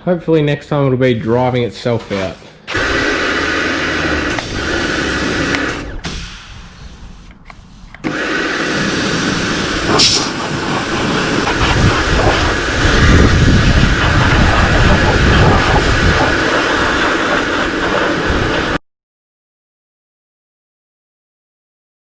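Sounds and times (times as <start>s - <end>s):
pressure washer spraying: 2.7s - 18.8s.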